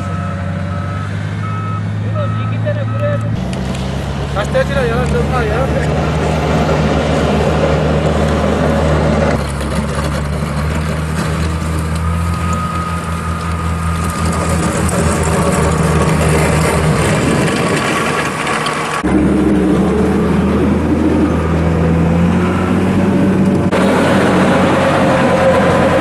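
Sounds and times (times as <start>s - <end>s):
heavy machinery engine running: 0.0s - 26.0s.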